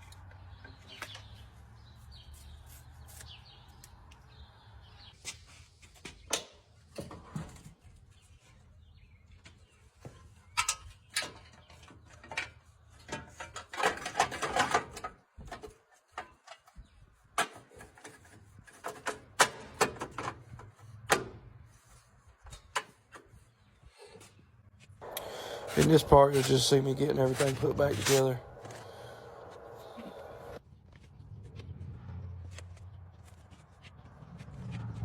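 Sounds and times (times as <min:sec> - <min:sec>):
hand tools clinking on metal parts: 0:10.6 - 0:15.2
scraping and rattling: 0:11.1 - 0:16.8.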